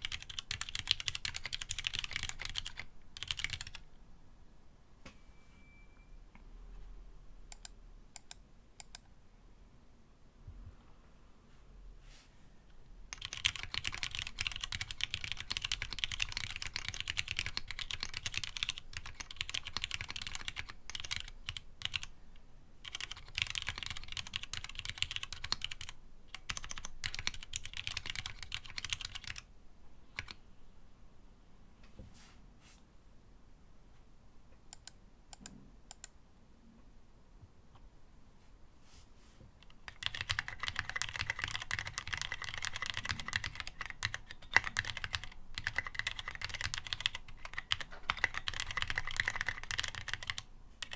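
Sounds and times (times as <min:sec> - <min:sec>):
fast typing on mechanical keyboard: 0:00.0 - 0:03.8, 0:13.1 - 0:22.1, 0:22.8 - 0:29.4, 0:30.1 - 0:30.4, 0:39.6 - 0:50.9.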